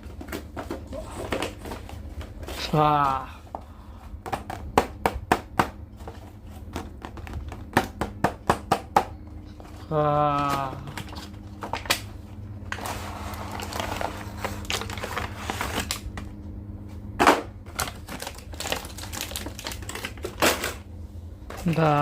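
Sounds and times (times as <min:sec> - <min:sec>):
packaging rustling: 0:12.7 - 0:16.3, 0:17.7 - 0:20.8.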